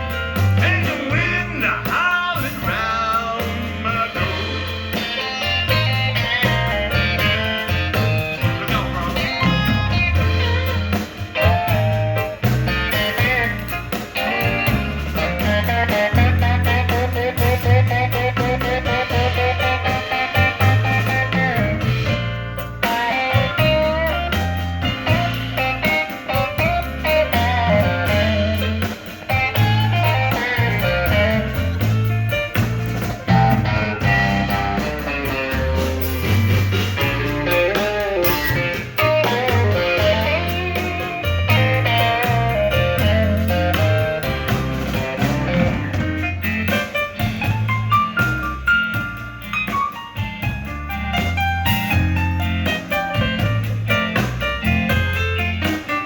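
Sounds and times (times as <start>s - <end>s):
blues band playing live: 0.0s - 56.0s
drum kit: 0.0s - 56.0s
guitar: 0.0s - 56.0s
stepping bass line: 0.0s - 56.0s.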